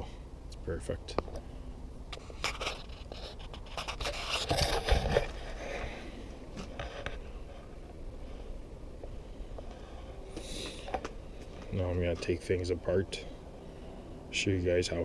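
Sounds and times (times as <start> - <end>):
scraping: 2.1 - 7.9.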